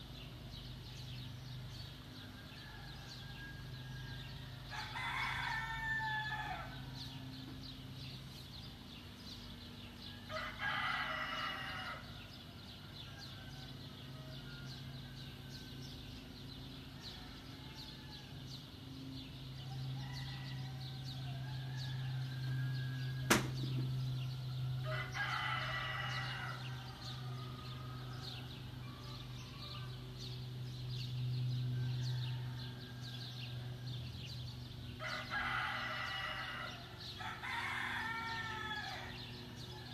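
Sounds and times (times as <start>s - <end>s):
steady low hum: 0.0s - 39.9s
rooster crowing: 2.2s - 7.3s, 10.0s - 16.0s, 17.0s - 30.3s, 31.8s - 34.2s, 35.0s - 39.9s.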